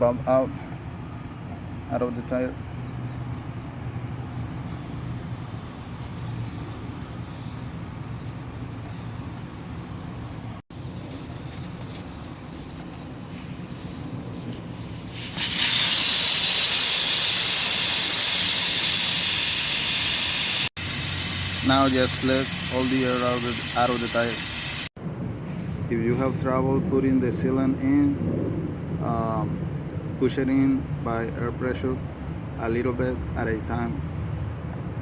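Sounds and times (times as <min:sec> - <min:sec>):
air hissing out of tire: 0:04.3 - 0:25.0.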